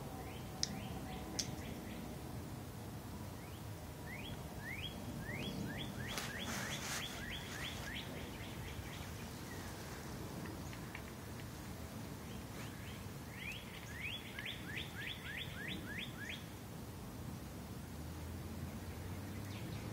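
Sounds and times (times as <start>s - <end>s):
low background noise: 0.0s - 19.9s
small birds chirping: 3.4s - 11.5s, 12.2s - 16.5s, 18.8s - 19.9s.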